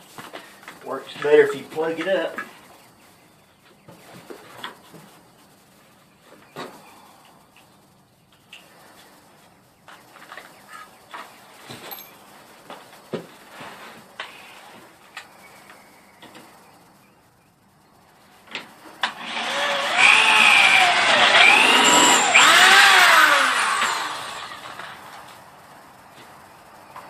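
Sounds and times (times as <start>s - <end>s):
electric drill motor: 19.0s - 25.3s.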